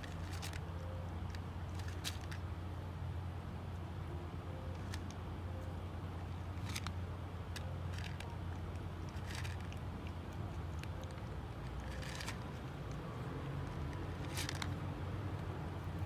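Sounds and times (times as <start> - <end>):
cat crunching dry kibble: 0.0 - 0.6, 1.2 - 2.4, 6.6 - 14.8
steady low hum: 0.0 - 16.0.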